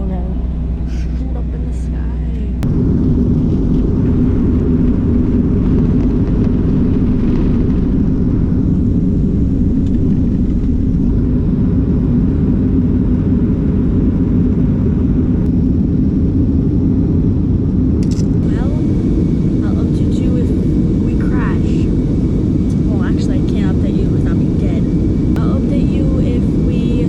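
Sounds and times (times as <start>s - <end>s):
jet engines rumbling in cabin: 0.0s - 27.0s.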